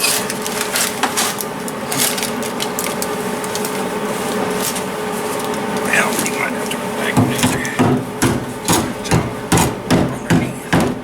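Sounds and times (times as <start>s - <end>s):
steady low hum: 4.9s - 11.0s.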